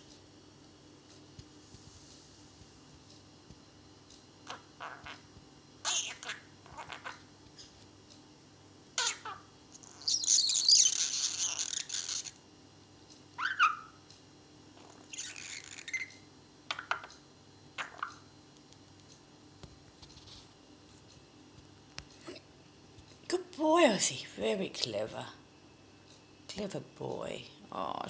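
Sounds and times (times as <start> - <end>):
budgerigar chirping and warbling: 4.5 - 5.2, 5.8 - 7.7, 9.0 - 12.4, 13.4 - 14.0, 15.0 - 17.1, 17.8 - 18.2.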